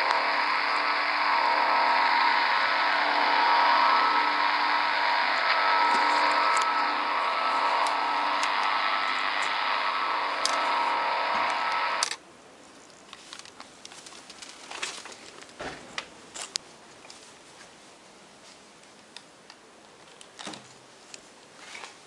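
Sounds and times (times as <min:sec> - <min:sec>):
loud radio buzzing signal: 0:00.0 - 0:12.1
faint radio hiss: 0:00.0 - 0:22.0.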